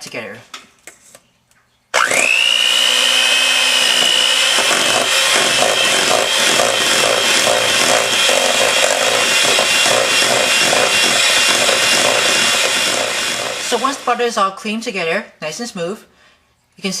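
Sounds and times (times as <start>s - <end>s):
electric mixer whining: 2.0s - 14.2s
rhythmic churning of butter: 2.1s - 14.0s.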